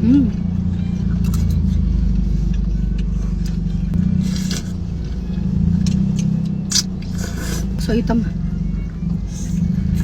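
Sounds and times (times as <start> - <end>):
car engine idling: 0.0 - 10.0.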